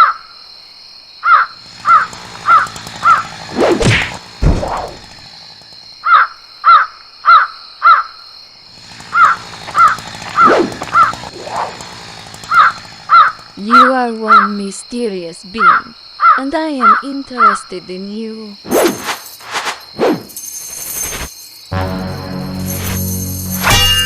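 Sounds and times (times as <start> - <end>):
crow cawing: 1.2 - 3.2, 6.0 - 8.2, 12.5 - 13.4, 15.7 - 17.7
whoosh ending in low thud: 3.8 - 5.0.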